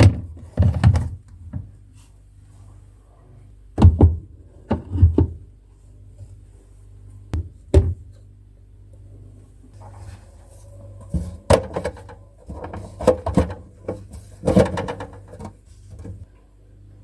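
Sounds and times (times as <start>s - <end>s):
low steady hum: 0.0s - 17.0s
plastic containers knocking: 11.0s - 16.2s.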